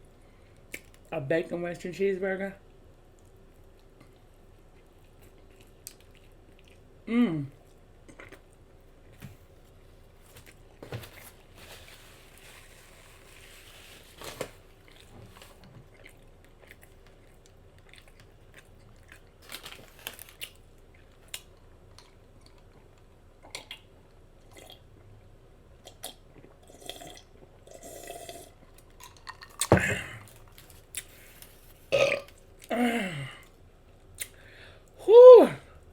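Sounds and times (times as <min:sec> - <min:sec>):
person chewing with mouth smacks: 0:03.1 - 0:06.9, 0:07.5 - 0:09.2, 0:14.8 - 0:19.4, 0:20.4 - 0:23.9
small food crunches: 0:10.3 - 0:23.8.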